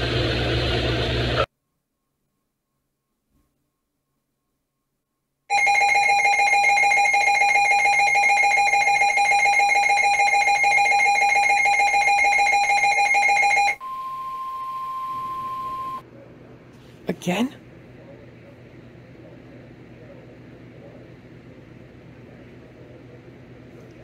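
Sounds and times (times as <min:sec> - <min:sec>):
single steady warning tone: 0:02.0 - 0:16.1
pulsing electronic alarm: 0:05.5 - 0:16.0.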